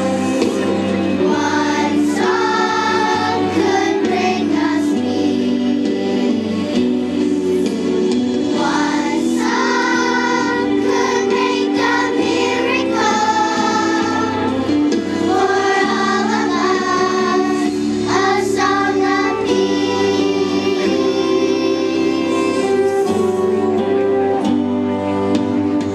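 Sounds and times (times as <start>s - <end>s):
children's choir singing: 0.0s - 23.9s
instrumental accompaniment: 0.0s - 25.9s.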